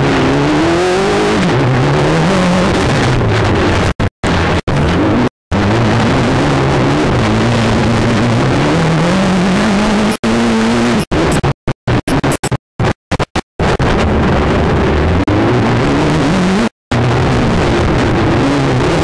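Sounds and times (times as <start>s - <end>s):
car engine accelerating: 0.0s - 11.6s, 13.6s - 19.0s
wind noise: 0.0s - 19.0s.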